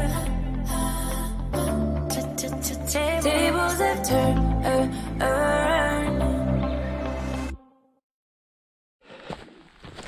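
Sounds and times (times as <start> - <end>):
pop song: 0.0 - 7.9.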